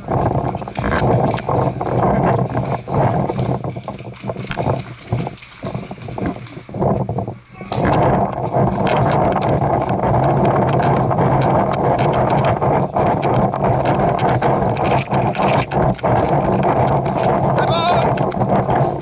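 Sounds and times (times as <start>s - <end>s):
rapid irregular clicks and knocks: 0.0s - 19.0s
steady rushing noise: 0.0s - 19.0s.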